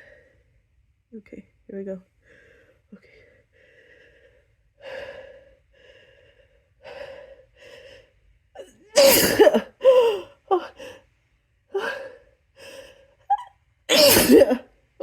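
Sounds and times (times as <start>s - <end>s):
person sneezing: 9.0s - 9.7s, 13.9s - 14.6s.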